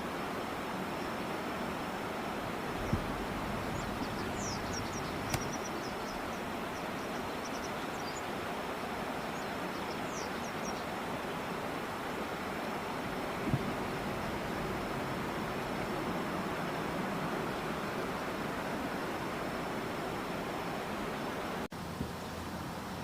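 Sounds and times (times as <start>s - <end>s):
river water rushing: 0.0s - 23.0s
bird chirps: 2.8s - 8.2s
click: 5.3s - 5.6s.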